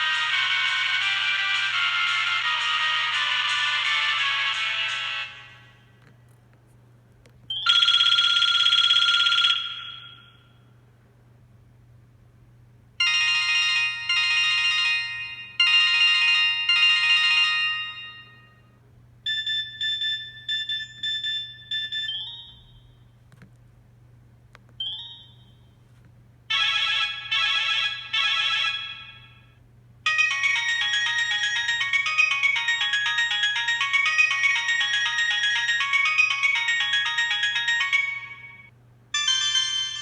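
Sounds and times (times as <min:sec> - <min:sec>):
melodic ringtone tune: 0:00.0 - 0:05.6, 0:07.5 - 0:10.3, 0:13.0 - 0:18.6, 0:19.3 - 0:22.9, 0:24.8 - 0:25.6, 0:30.1 - 0:40.0
trilling phone ring: 0:07.5 - 0:10.6, 0:30.1 - 0:40.0
quick beeps: 0:24.8 - 0:25.7.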